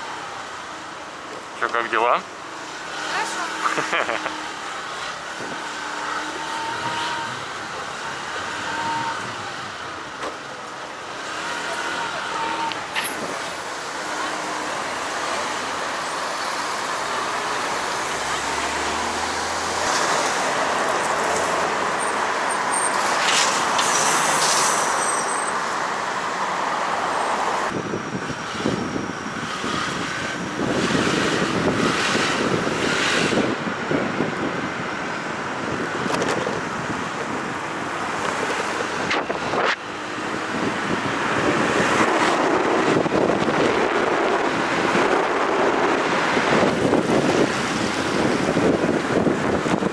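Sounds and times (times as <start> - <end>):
road traffic: 0.0 - 49.9
wind on microphone: 27.6 - 49.9.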